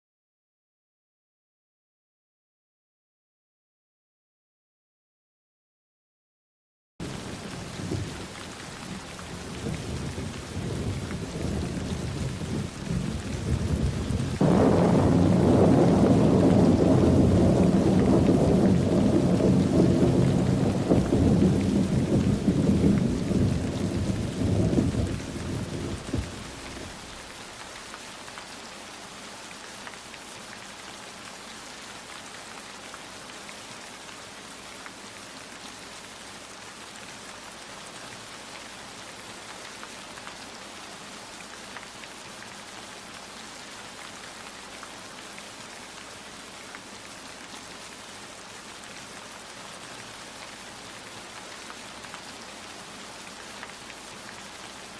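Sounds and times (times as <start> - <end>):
steady rain falling: 7.0 - 54.9
thunder rumbling: 8.9 - 27.2.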